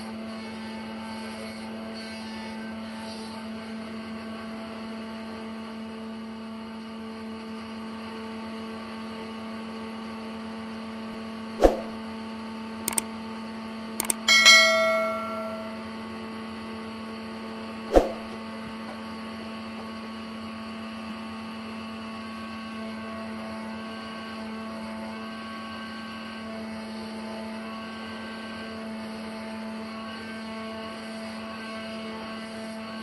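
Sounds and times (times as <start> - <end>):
sharp clicks: 12.9 - 13.1, 14.0 - 15.8
metallic clang ringing: 14.0 - 15.9.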